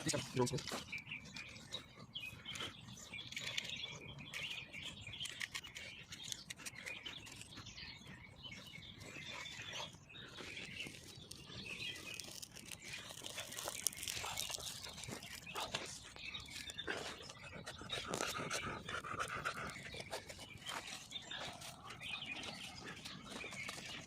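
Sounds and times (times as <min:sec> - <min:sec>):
dry twigs rustling and crackling: 0:00.0 - 0:01.9, 0:10.2 - 0:17.4, 0:20.0 - 0:24.0.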